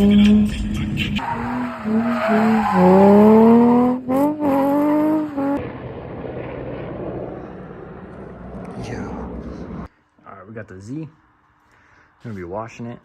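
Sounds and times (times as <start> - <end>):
car engine revving hard: 1.3 - 5.6
outdoor hush: 6.0 - 12.8.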